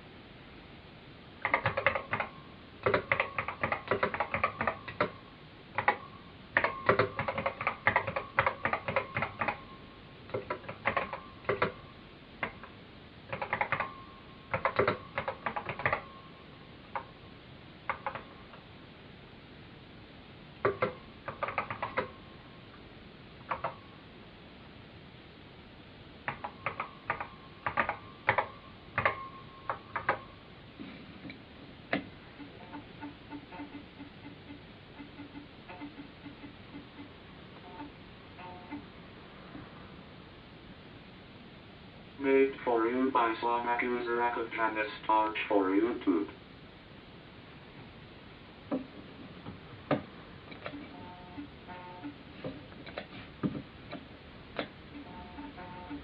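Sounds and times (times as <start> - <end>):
typing on a keyboard: 1.4 - 5.2, 5.8 - 9.6, 10.3 - 11.8, 12.4 - 12.7, 13.3 - 16.1, 17.9 - 18.3, 20.6 - 22.1, 23.4 - 23.8, 26.3 - 30.3.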